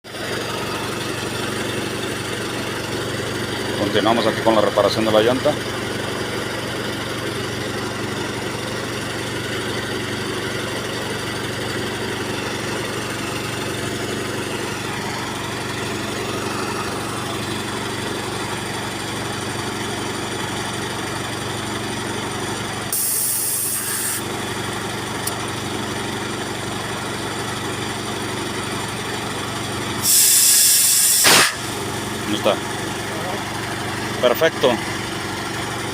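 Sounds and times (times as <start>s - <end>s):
hissing air burst: 23.0s - 24.2s, 30.0s - 31.7s.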